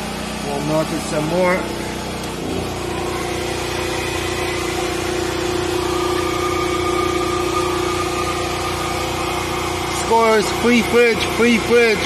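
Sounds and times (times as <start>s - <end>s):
hair dryer running: 0.0s - 12.0s
high steady tone: 2.8s - 11.0s.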